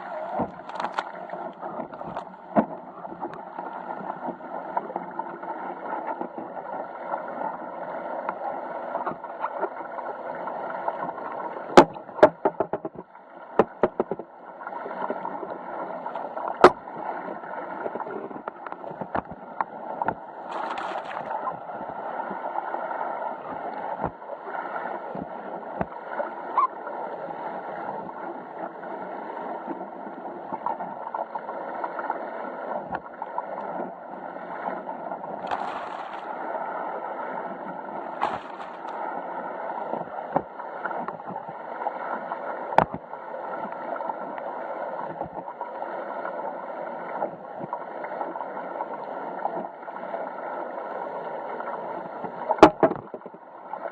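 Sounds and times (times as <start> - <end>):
water rushing along boat hull: 0.0 - 53.9
sharp knocks: 11.8 - 13.0, 13.6 - 14.3.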